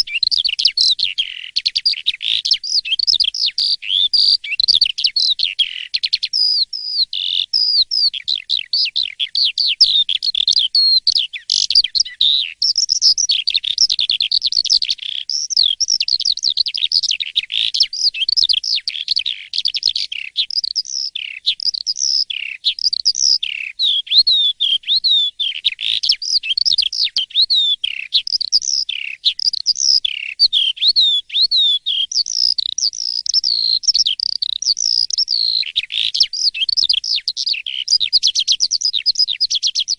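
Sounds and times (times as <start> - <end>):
starling singing whistled notes: 0.0 - 39.9.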